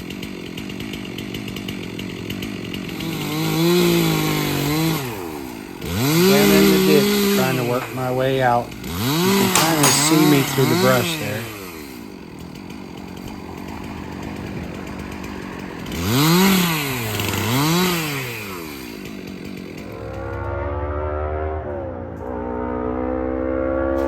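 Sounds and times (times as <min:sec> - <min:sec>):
chainsaw revving: 0:00.0 - 0:24.0
car passing with loud exhaust: 0:19.9 - 0:24.0.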